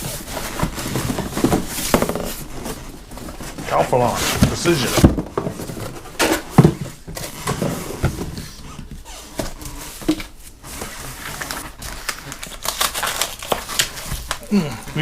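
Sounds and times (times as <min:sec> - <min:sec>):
cardboard box being handled: 0:00.0 - 0:11.9.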